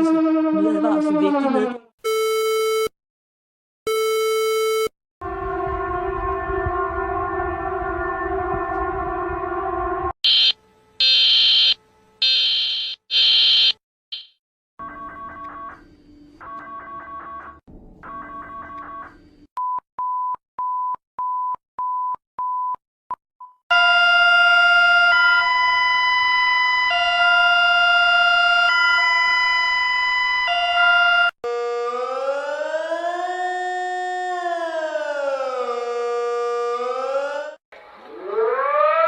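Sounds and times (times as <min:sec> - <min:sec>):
wailing siren: 0:00.0 - 0:01.9, 0:05.2 - 0:12.6, 0:23.7 - 0:39.0.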